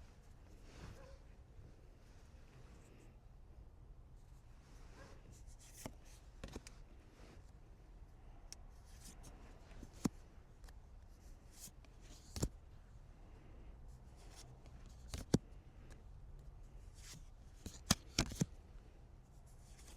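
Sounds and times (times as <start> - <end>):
cards sliding and rustling: 5.2 - 7.4, 8.8 - 12.6, 14.1 - 15.6, 16.8 - 18.6, 19.5 - 19.9.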